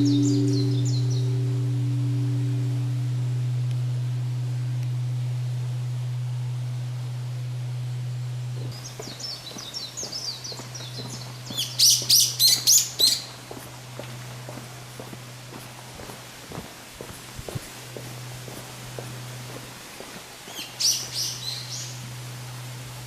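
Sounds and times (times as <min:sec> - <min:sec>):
birds chirping: 0:00.0 - 0:02.4, 0:08.6 - 0:23.0
temple bell humming: 0:00.0 - 0:16.7, 0:17.7 - 0:23.0.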